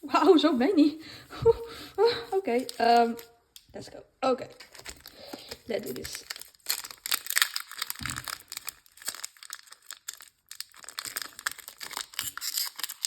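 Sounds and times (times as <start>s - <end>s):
foil wrapper tearing and crackling: 2.5s - 3.3s, 4.5s - 13.0s.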